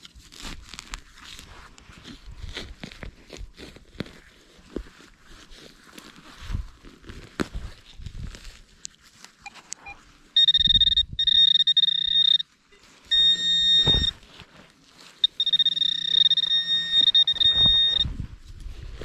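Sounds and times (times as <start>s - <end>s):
metal detector high beep: 9.8s - 12.5s, 13.1s - 14.2s, 15.2s - 18.1s.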